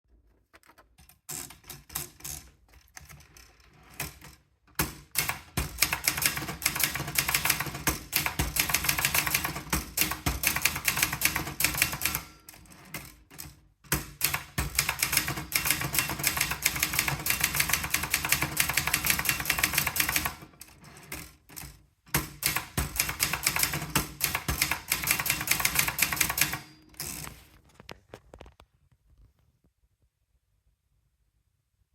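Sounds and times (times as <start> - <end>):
typewriter key strikes: 4.0 - 27.3.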